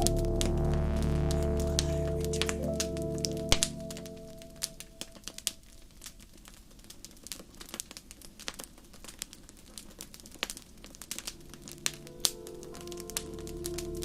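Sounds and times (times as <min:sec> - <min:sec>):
soft music with held tones: 0:00.0 - 0:05.8, 0:11.2 - 0:14.0
burning logs popping: 0:00.0 - 0:14.0
wood fire crackling: 0:00.0 - 0:14.0.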